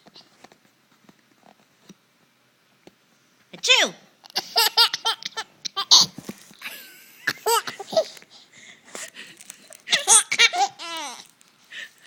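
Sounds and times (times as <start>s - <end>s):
baby giggling: 4.2s - 8.2s, 9.9s - 11.2s.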